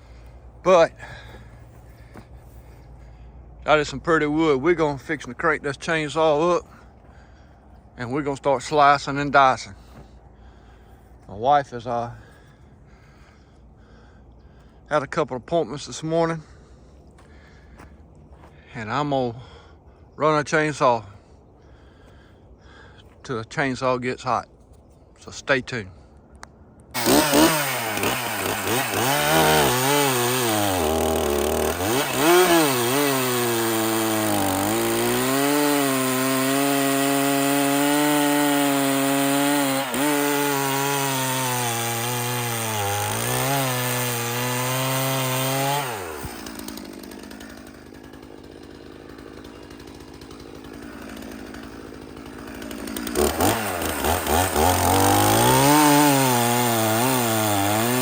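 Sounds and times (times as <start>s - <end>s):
chainsaw cutting wood: 26.9s - 58.0s.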